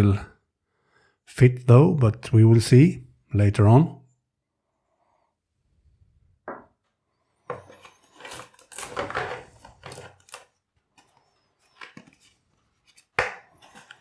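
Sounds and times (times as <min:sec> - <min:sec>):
packaging rustling: 0:08.1 - 0:14.0.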